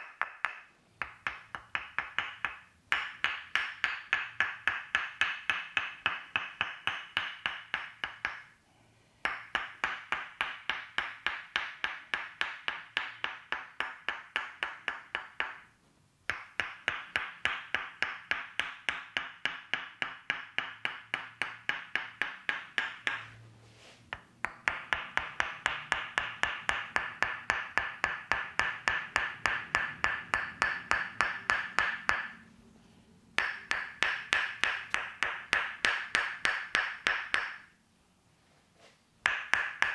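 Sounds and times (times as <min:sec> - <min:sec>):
wooden mallet knocking on wood: 0:00.0 - 0:08.5, 0:16.3 - 0:23.4, 0:24.1 - 0:32.4, 0:33.4 - 0:37.7, 0:39.2 - 0:39.9.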